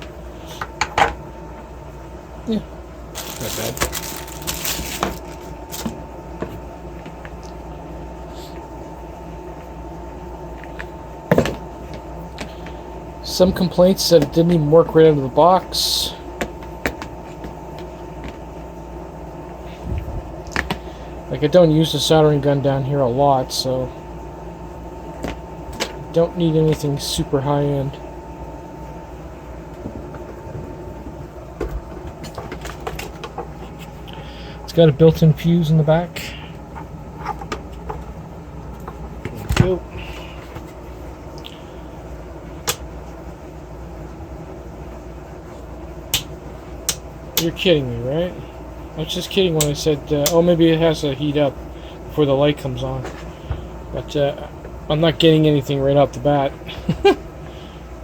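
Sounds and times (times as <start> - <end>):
faint constant whine: 0.0 - 58.0
low background hum: 0.0 - 58.0
plastic handling clicks and rustles: 3.2 - 6.0.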